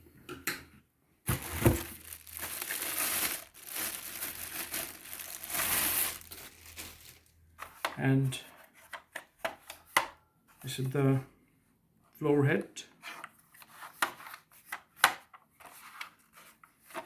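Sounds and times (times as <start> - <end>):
plastic packaging crinkling: 1.3 - 7.3.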